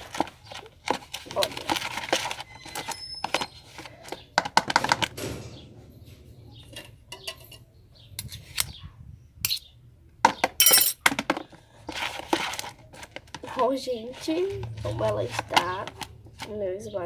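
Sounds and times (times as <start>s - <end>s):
utensil scraping a container: 0.0s - 5.1s, 11.9s - 16.5s.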